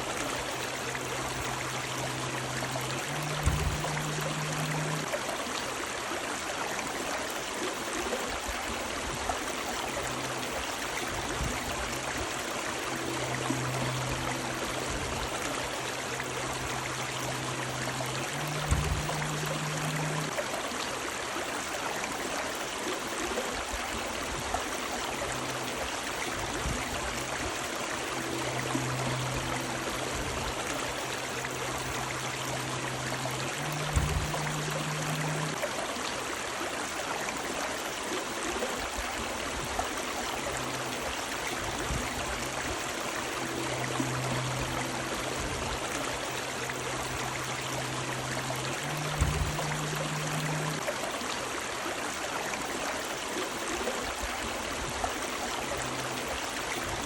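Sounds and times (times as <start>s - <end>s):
low hum: 0.0s - 5.6s, 9.5s - 20.4s, 24.7s - 35.6s, 40.0s - 50.9s
river water rushing: 0.0s - 57.0s
low thump: 3.4s - 4.8s, 18.4s - 20.2s, 33.7s - 35.5s, 49.0s - 50.8s.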